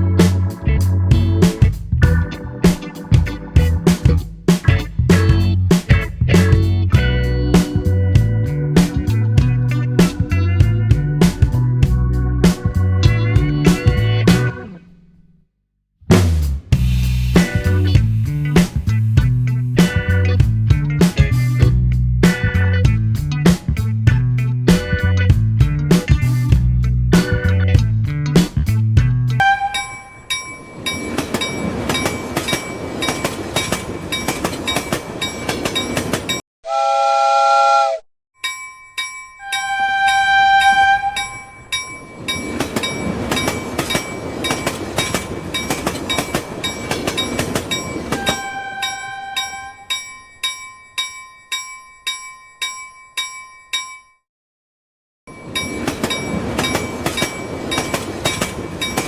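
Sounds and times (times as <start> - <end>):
electronic horn beeps: 29.4 - 30.4, 39.4 - 41.6, 48.2 - 50.0
electronic tone sequence: 29.4 - 30.4, 48.2 - 49.9.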